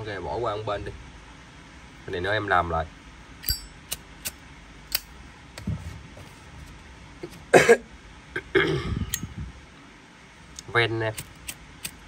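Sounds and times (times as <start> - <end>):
metallic clicks of lighters: 3.4 - 5.1, 10.6 - 12.0
man coughing: 7.5 - 9.0.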